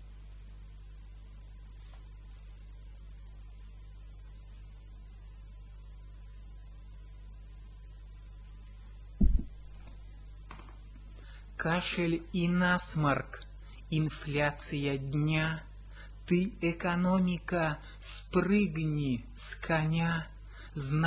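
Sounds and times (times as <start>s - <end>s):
electrical mains hum: 0.0s - 21.0s
loud low thump: 9.2s - 9.8s.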